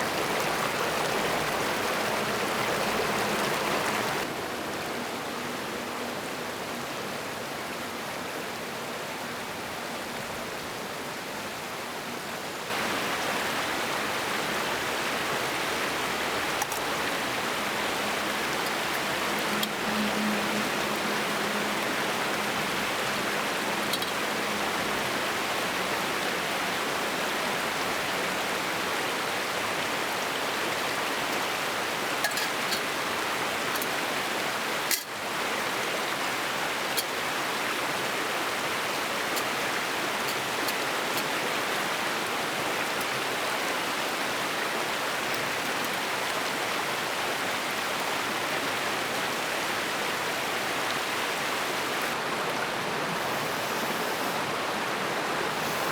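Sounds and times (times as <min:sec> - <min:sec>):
stream water rushing: 0:00.0 - 0:55.9.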